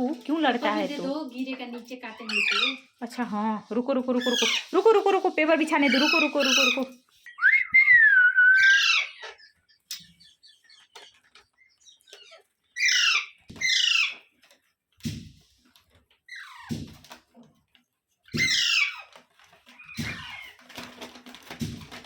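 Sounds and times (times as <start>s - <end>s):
faint clicks and rustles: 0.0s - 8.0s, 9.2s - 12.8s, 13.4s - 22.0s
parrot screeching: 2.1s - 2.9s, 4.2s - 4.7s, 5.8s - 9.4s, 12.1s - 14.3s, 16.3s - 16.8s, 18.3s - 20.6s.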